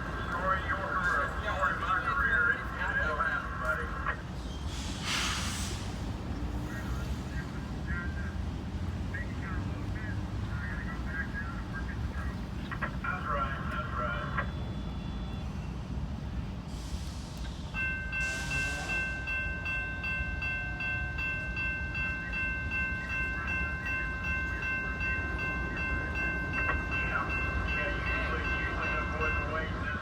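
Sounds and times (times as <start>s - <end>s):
diesel engine rumble: 0.0s - 17.7s.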